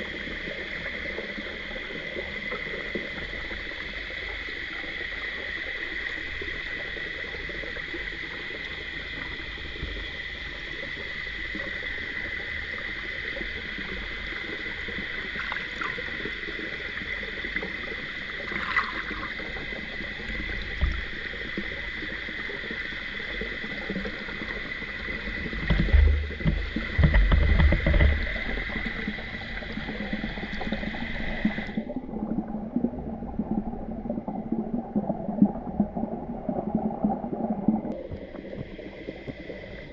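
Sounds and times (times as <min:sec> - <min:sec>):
low hum: 0:08.6 - 0:39.9.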